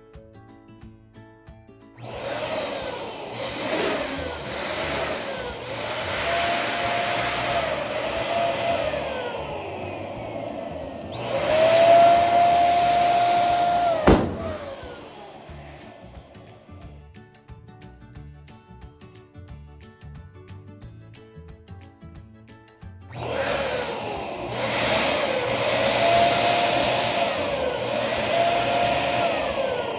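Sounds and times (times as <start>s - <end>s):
electric balloon pump whining: 2.0s - 17.0s, 23.1s - 29.9s
balloon bursting bang: 14.0s - 15.0s.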